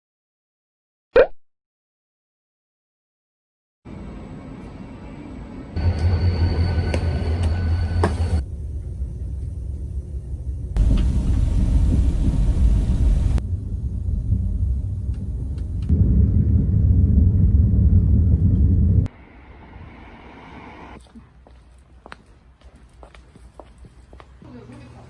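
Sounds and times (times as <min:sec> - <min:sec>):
low rumble of moving vehicle: 0:05.8 - 0:19.1.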